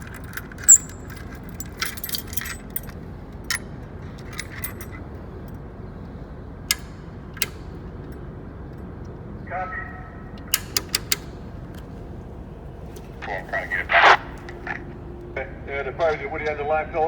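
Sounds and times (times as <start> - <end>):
sharp metal clicks: 0.0 - 5.0, 6.6 - 8.3, 10.4 - 12.0
keys jangling and clinking: 0.0 - 5.6.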